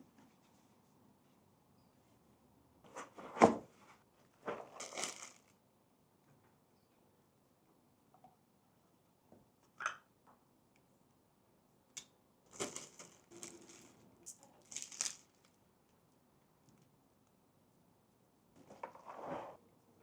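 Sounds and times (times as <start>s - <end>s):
packaging rustling and scraping: 4.4s - 5.5s, 12.5s - 14.0s, 14.6s - 15.6s.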